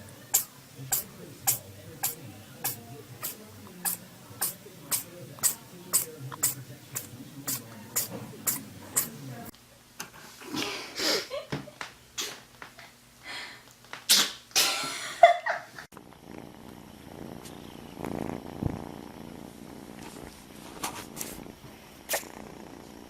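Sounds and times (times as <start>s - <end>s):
cat purring: 0.0s - 9.5s, 16.0s - 23.0s
cat sneezing: 0.3s - 9.2s, 14.1s - 14.8s, 22.1s - 22.3s.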